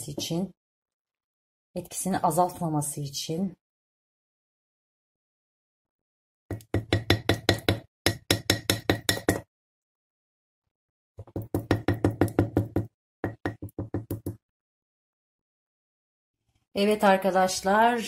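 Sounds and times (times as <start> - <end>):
wooden spoon knocking on glass jar: 6.5 - 9.5, 11.2 - 14.4.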